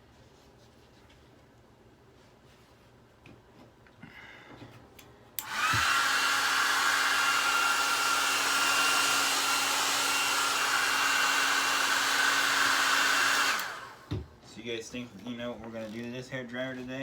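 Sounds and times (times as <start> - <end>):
faint handling sounds: 0.0 - 4.0, 14.3 - 17.0
hair dryer switch click: 5.4 - 10.6, 13.2 - 14.0
hair dryer blowing: 5.4 - 14.2.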